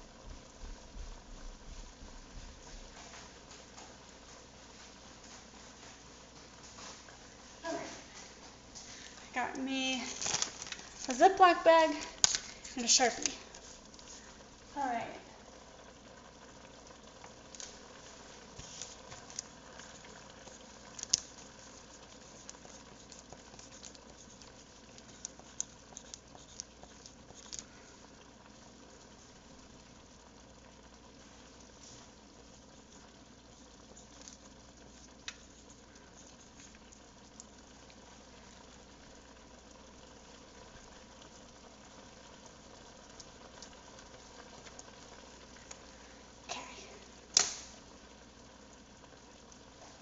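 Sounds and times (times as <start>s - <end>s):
pot bubbling: 0.0s - 50.0s.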